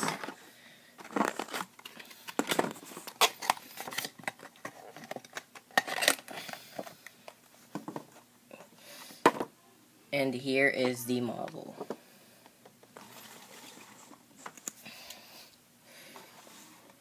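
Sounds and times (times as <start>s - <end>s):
plastic packaging crinkling: 1.0s - 6.3s.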